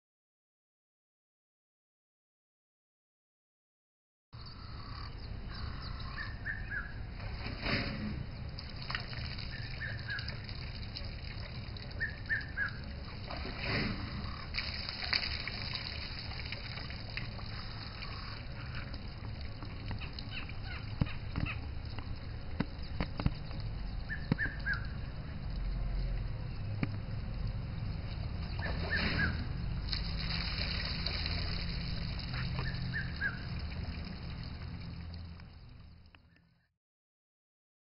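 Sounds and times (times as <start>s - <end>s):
cuckoo calling: 4.4s - 7.0s, 9.5s - 10.4s, 12.0s - 13.0s, 24.1s - 25.0s, 28.5s - 29.6s, 32.4s - 33.5s
steady low rumble: 4.4s - 36.4s.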